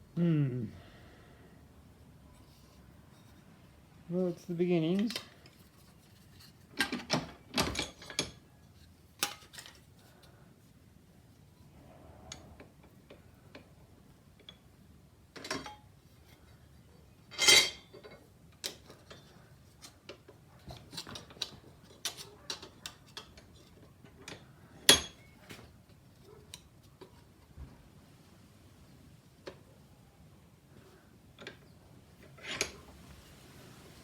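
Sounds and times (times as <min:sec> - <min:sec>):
metal parts and tools clinking: 0:04.9 - 0:08.5, 0:17.2 - 0:25.5, 0:32.2 - 0:32.8.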